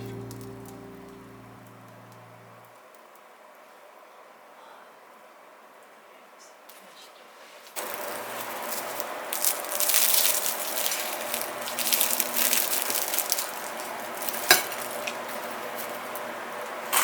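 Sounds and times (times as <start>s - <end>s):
food sizzling: 0.0s - 2.6s, 7.8s - 16.4s.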